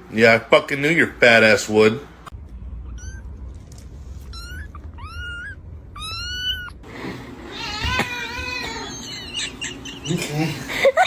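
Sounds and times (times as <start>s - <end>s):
cat meowing: 4.2s - 6.8s, 7.4s - 9.0s.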